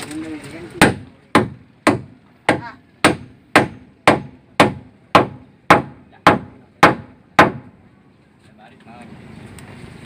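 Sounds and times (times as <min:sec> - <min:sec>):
hammer strikes: 0:00.8 - 0:07.7.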